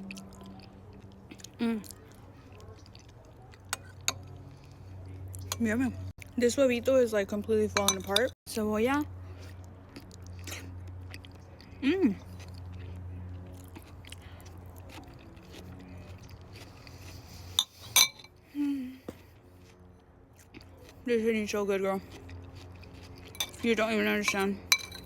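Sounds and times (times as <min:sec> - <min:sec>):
person chewing food: 0:00.0 - 0:06.4, 0:09.2 - 0:21.0, 0:22.0 - 0:23.7.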